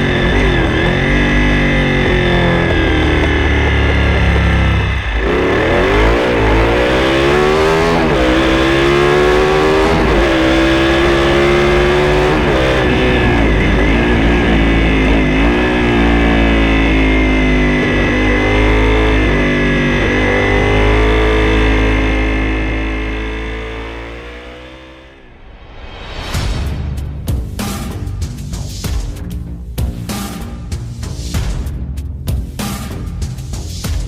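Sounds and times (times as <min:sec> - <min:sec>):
motorcycle engine revving: 0:00.0 - 0:25.4.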